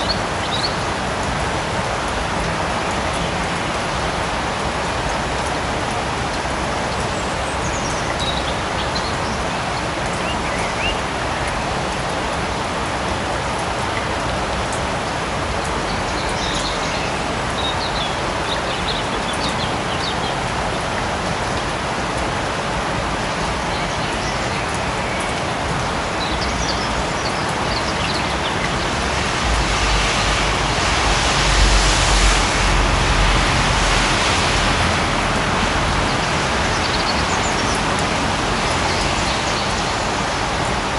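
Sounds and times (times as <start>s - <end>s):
light rain falling: 0.0s - 40.9s
deep rumble: 29.0s - 36.0s.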